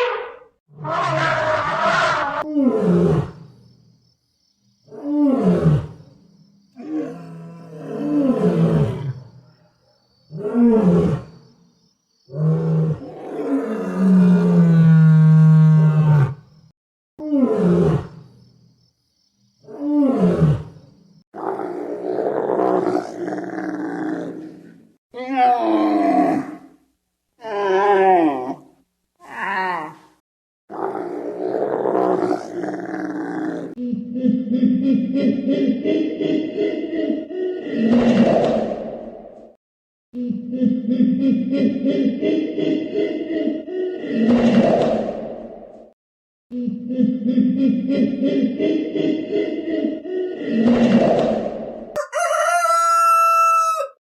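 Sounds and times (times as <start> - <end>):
animal roaring: 0.0 - 3.4, 4.9 - 6.0, 6.8 - 9.5, 12.3 - 16.4, 19.7 - 20.8, 21.4 - 24.8, 25.6 - 26.7, 30.7 - 39.2, 40.6 - 45.4, 48.0 - 52.6.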